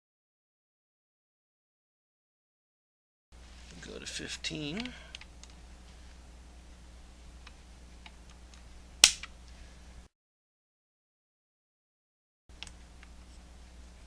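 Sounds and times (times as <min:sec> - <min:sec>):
torque driver sharp click: 0:09.0 - 0:09.3.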